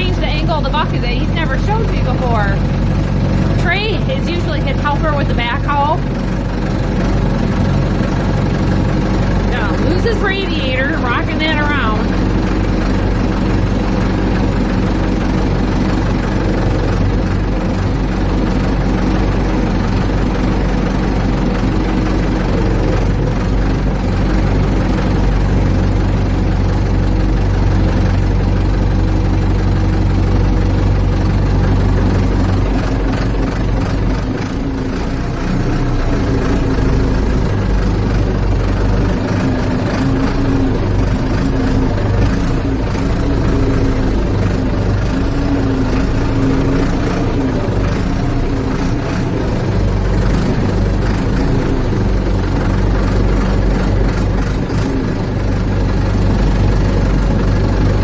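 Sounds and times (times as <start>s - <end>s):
backhoe engine running: 0.0s - 58.0s.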